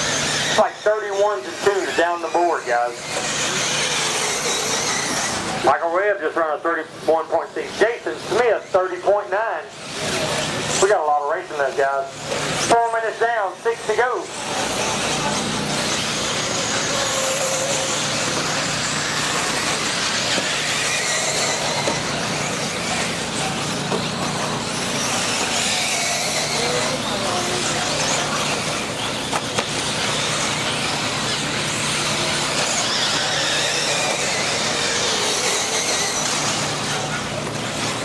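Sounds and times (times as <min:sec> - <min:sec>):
rc car electric motors whining: 0:00.0 - 0:38.0.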